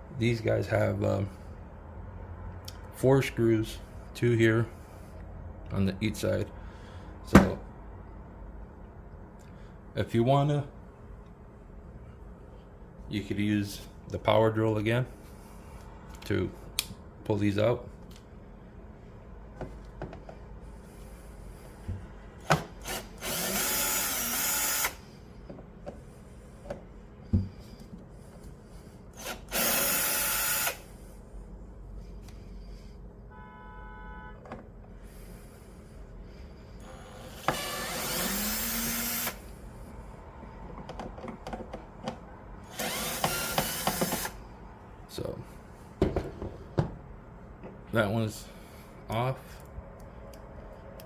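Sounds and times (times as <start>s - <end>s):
power drill driving screws: 22.6s - 25.0s, 29.1s - 30.8s, 36.8s - 39.4s, 42.7s - 44.4s.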